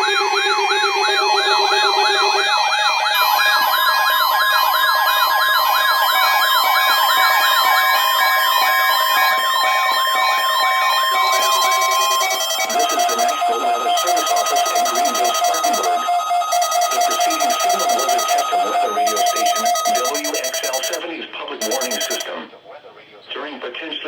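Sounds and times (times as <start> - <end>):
siren-like alarm warble: 0.0 - 21.0, 21.6 - 22.3
on-off beeps: 11.0 - 21.0, 21.6 - 22.3
steady alert tone: 11.2 - 21.0, 21.6 - 22.3.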